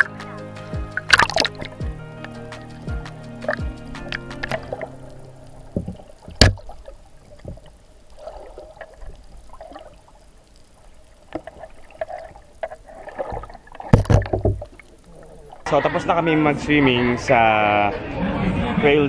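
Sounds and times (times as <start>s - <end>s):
water splashing and sloshing: 0.0s - 16.0s
sharp knocks: 5.7s - 6.7s.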